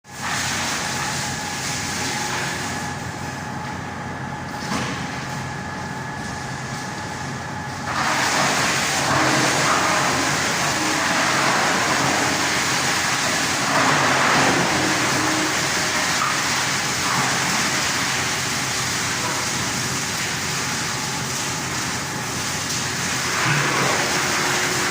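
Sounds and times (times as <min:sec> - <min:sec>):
stump chipper running: 0:07.8 - 0:24.9.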